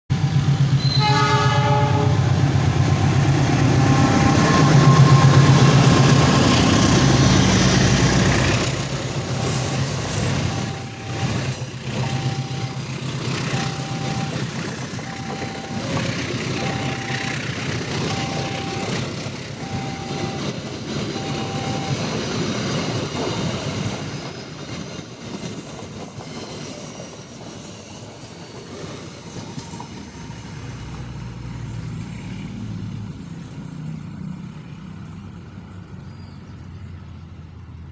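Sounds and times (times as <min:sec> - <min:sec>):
locomotive engine rumble: 0:00.1 - 0:25.4
train carriages clattering on rails: 0:03.5 - 0:31.6
short repeating tone: 0:10.5 - 0:12.9, 0:13.5 - 0:14.4, 0:15.0 - 0:19.0, 0:19.6 - 0:20.5.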